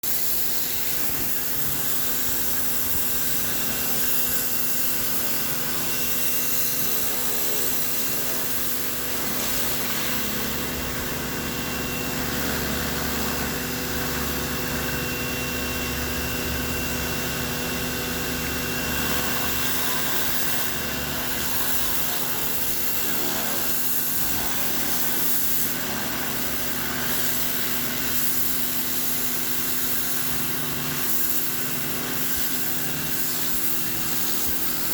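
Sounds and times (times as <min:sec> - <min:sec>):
pressure washer running: 0:00.0 - 0:34.9.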